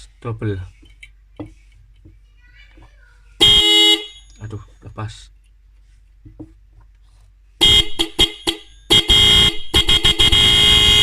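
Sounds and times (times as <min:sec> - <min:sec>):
disc horns blasting: 0:03.4 - 0:04.3, 0:07.6 - 0:11.0.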